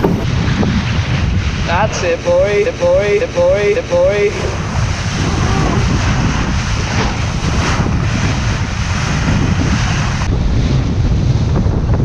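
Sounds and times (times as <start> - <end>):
water rushing along a hull: 0.0 - 12.0
wind buffeting microphone: 0.0 - 12.0.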